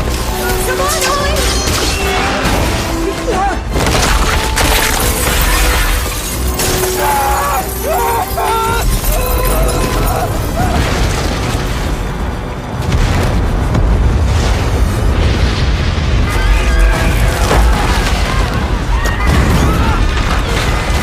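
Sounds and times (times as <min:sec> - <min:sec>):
crashes and shattering debris: 0:00.0 - 0:21.0
voices crying out: 0:06.6 - 0:10.8
heavy low rumble: 0:10.3 - 0:19.0.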